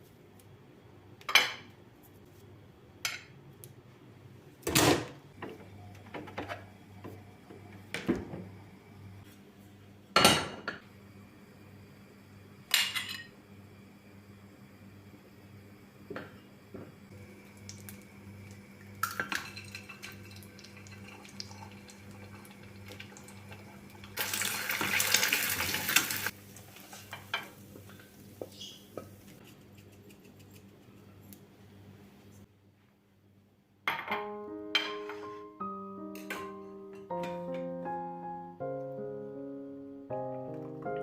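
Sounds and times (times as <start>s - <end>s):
dishes and cutlery clinking: 33.9s - 35.4s.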